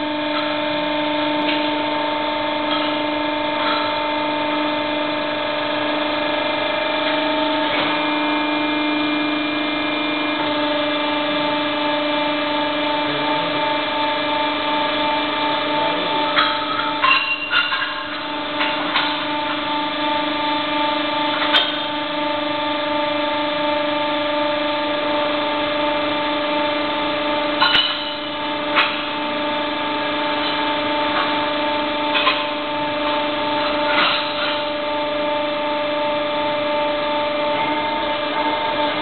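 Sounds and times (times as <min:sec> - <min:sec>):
electric motor humming: 0:00.0 - 0:17.1, 0:35.0 - 0:39.0.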